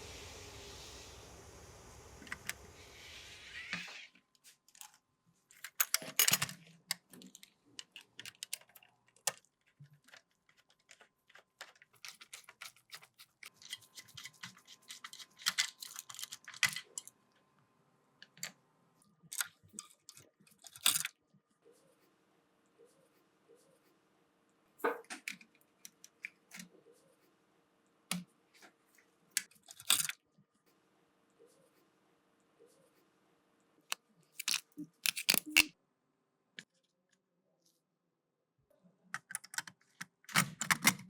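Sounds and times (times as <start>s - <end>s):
steady hiss: 0.0s - 4.1s
clicks and taps of small parts: 4.8s - 13.8s, 29.4s - 30.2s, 33.9s - 35.7s, 39.2s - 41.0s
scratchy scrapes of small parts: 4.8s - 17.2s, 19.3s - 21.1s, 29.4s - 30.2s, 34.3s - 35.7s.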